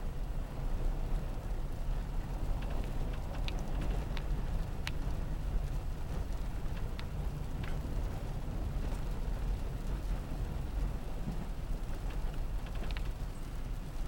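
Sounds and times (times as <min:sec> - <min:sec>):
car engine and tyres rumbling: 0:00.0 - 0:14.0
faint ticks: 0:02.4 - 0:08.2, 0:11.2 - 0:13.5.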